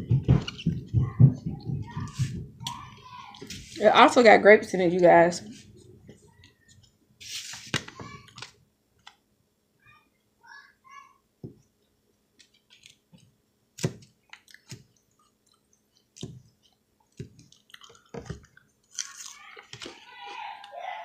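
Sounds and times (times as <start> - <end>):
salad crunching and chewing: 14.0 - 21.0.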